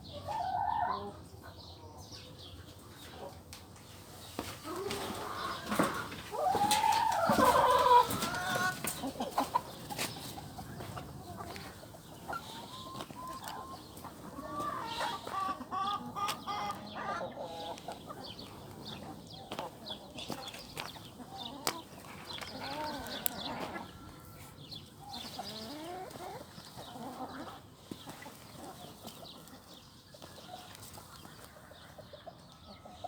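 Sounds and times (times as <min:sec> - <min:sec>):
chickens clucking: 0:00.0 - 0:33.0
drawn-out chicken call: 0:04.6 - 0:27.6.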